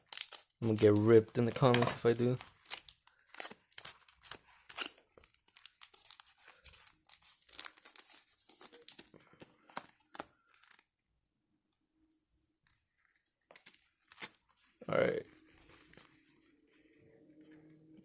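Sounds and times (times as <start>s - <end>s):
foil wrapper tearing and crinkling: 0.0s - 9.1s, 13.6s - 14.5s.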